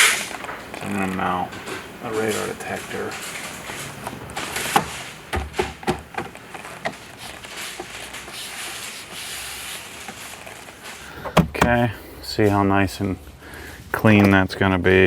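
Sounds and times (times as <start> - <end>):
hands rustling plastic trim: 0.0 - 12.0
sharp clicks and knocks: 3.1 - 7.0.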